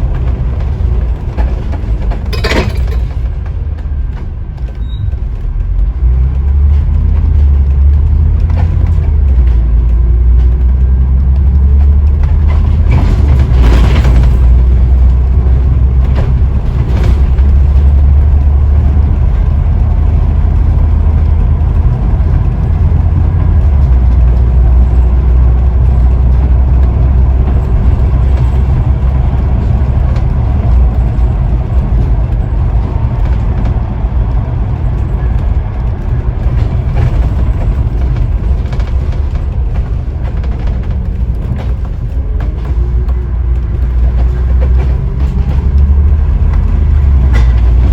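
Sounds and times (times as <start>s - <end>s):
bus diesel engine running: 0.0s - 47.9s
road noise: 0.0s - 47.9s.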